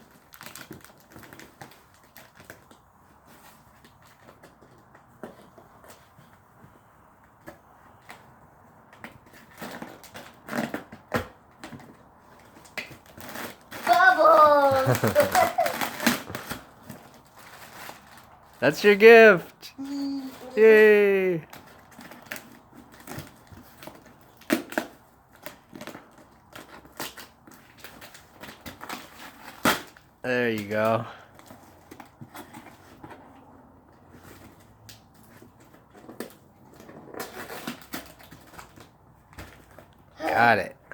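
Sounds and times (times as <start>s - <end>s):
gift packaging rustling: 0.0s - 6.9s, 9.2s - 40.6s
scratchy packaging burst: 12.9s - 19.3s.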